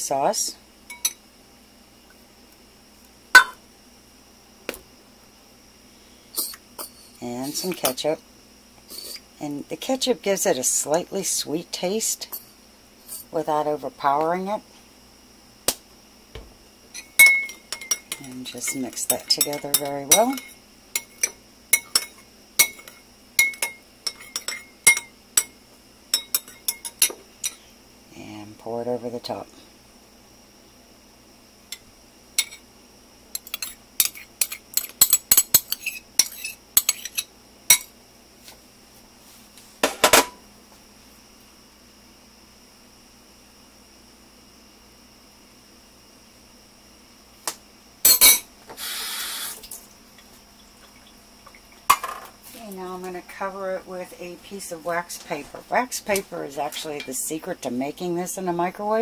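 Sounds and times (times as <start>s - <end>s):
kitchenware clattering: 3.4s - 3.6s, 17.0s - 25.1s, 51.9s - 52.3s
utensil clinking against bowl: 17.0s - 27.6s.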